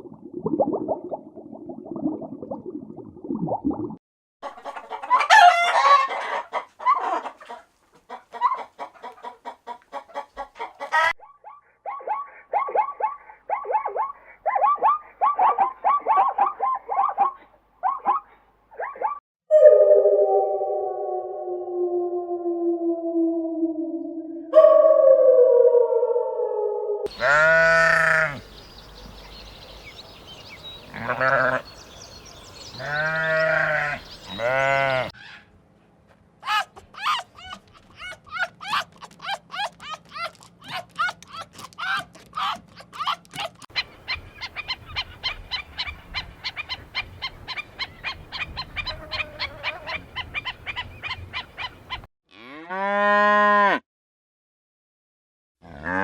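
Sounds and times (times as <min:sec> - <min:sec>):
chickens clucking: 0:04.4 - 0:11.1
chicken drawn-out call: 0:04.4 - 0:11.2, 0:27.1 - 0:28.5
livestock bleating: 0:27.1 - 0:28.4, 0:30.9 - 0:31.7, 0:32.8 - 0:35.1.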